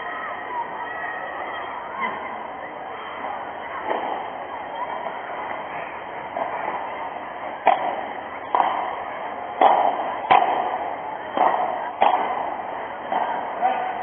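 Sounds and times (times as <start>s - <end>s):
ball bouncing: 7.6s - 9.0s, 9.6s - 12.5s
paddle hitting ball: 7.6s - 13.6s.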